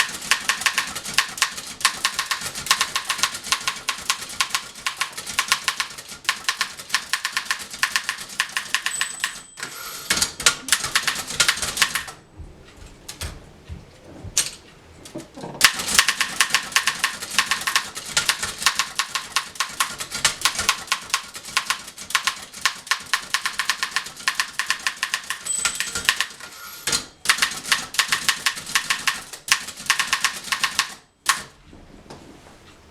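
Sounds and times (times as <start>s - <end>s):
manual typewriter typing: 0.0s - 12.2s, 14.4s - 31.6s.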